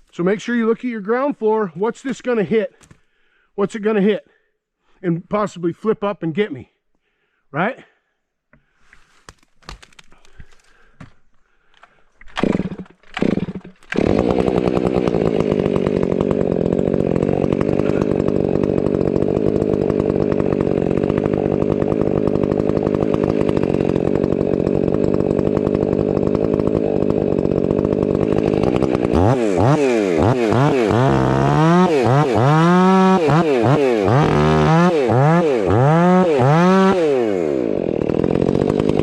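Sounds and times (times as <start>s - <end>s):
chainsaw pull-start: 8.6s - 39.0s
chainsaw running at high speed: 12.4s - 39.0s.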